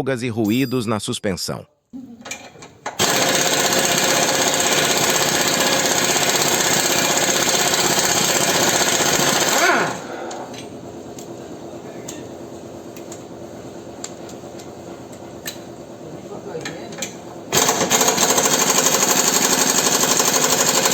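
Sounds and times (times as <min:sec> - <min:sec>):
air impact tool rattling: 0:02.3 - 0:10.7, 0:17.5 - 0:20.9.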